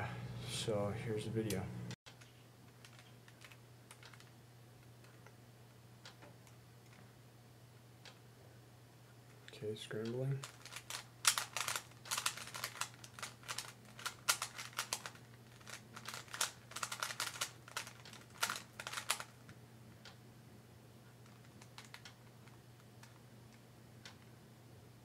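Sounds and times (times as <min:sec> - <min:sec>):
plastic puzzle cube clicking: 0:10.4 - 0:19.3, 0:21.2 - 0:22.2.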